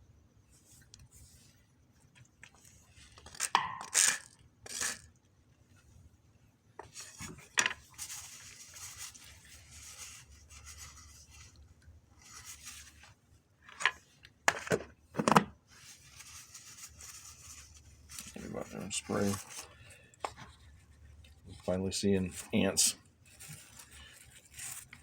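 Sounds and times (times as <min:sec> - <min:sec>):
rubbing and rustling: 0:06.8 - 0:13.3, 0:15.6 - 0:25.0.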